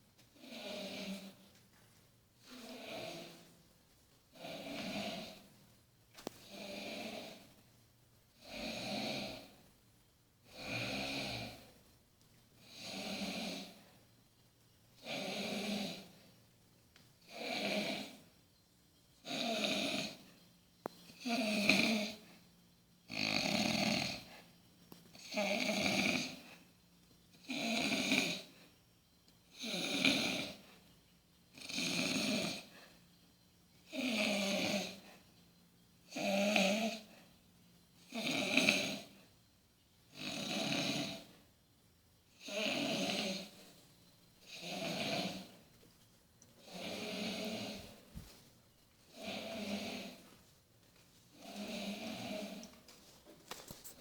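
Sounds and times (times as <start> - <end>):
quiet breaths: 0.0 - 54.0
man snoring loudly: 8.4 - 9.5, 10.5 - 11.6, 12.7 - 13.8, 15.0 - 16.1, 17.3 - 18.2, 19.3 - 20.2, 21.2 - 22.2, 23.1 - 24.3, 25.2 - 26.4, 27.4 - 28.5, 29.6 - 30.6, 31.6 - 32.7, 33.9 - 35.0, 36.1 - 37.1, 38.1 - 39.1, 40.2 - 41.3, 42.4 - 43.6, 44.5 - 45.6, 46.6 - 48.0, 49.1 - 50.2, 51.4 - 52.6.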